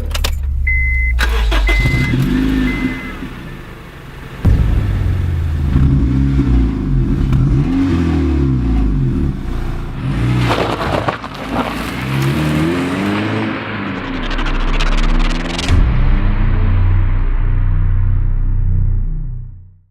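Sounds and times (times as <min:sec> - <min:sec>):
car engine revving: 0:00.0 - 0:17.7
rough crackling from engine: 0:10.3 - 0:12.7.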